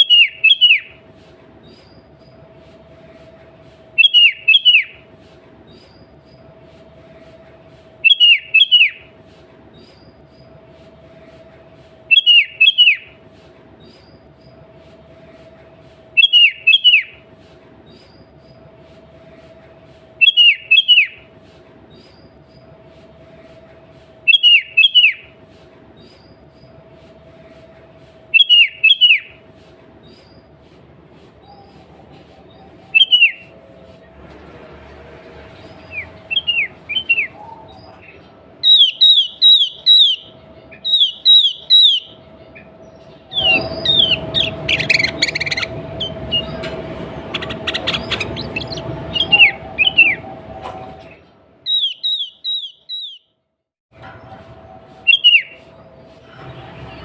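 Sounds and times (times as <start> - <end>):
bird singing whistled notes: 0.0 - 1.0, 4.0 - 5.0, 8.0 - 9.1, 12.1 - 13.2, 16.2 - 17.2, 20.2 - 21.3, 24.3 - 25.3, 28.3 - 29.4, 32.5 - 33.5, 35.8 - 46.6, 47.3 - 50.2, 51.7 - 53.3, 55.1 - 55.6.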